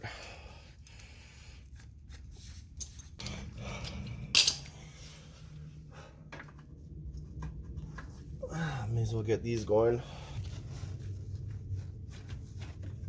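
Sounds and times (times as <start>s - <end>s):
faint low hum: 0.0s - 13.0s
metal tools clinking and rattling: 2.8s - 4.9s.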